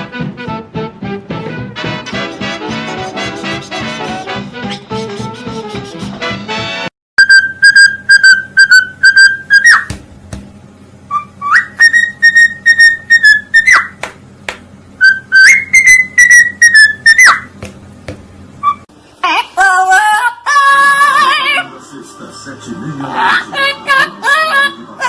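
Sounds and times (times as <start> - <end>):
person whistling: 7.2 - 9.9, 11.1 - 13.9, 15.0 - 17.5.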